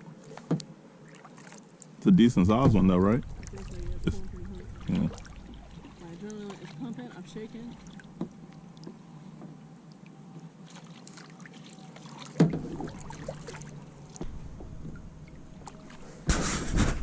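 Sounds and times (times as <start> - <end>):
wind noise on microphone: 2.6 - 5.9, 16.3 - 17.0.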